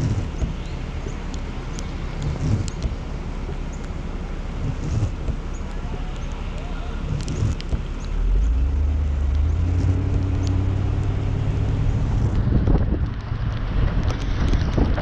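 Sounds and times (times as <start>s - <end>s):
wind buffeting microphone: 4.4s - 15.0s.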